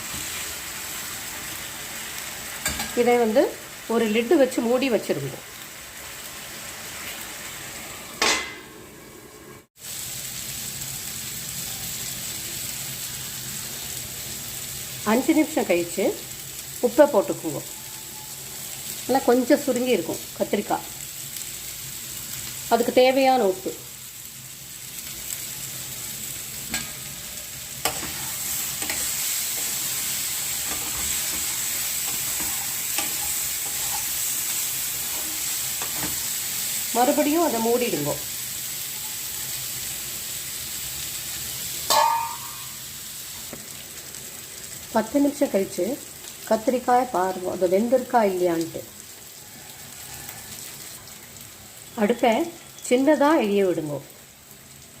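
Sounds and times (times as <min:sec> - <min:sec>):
vegetables sizzling in a pan: 0:00.0 - 0:55.0
metal clank from pan: 0:02.6 - 0:03.0, 0:08.2 - 0:08.8, 0:41.8 - 0:42.8.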